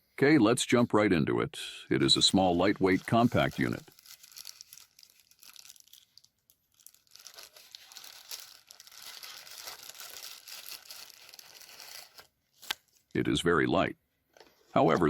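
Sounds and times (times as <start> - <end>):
packaging crinkling: 2.4 - 13.1.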